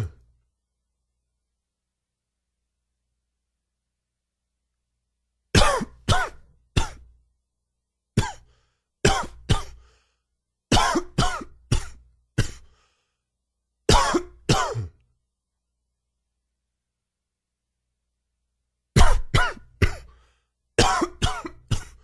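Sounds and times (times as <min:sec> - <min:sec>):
man coughing: 0:05.6 - 0:07.1, 0:08.2 - 0:08.5, 0:09.1 - 0:09.8, 0:10.7 - 0:12.7, 0:13.9 - 0:15.0, 0:19.0 - 0:20.2, 0:20.8 - 0:22.0.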